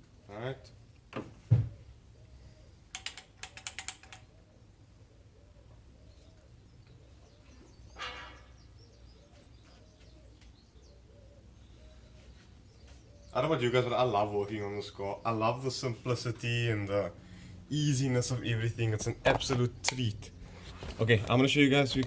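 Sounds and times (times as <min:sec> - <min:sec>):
dove cooing: 0:03.5 - 0:14.9.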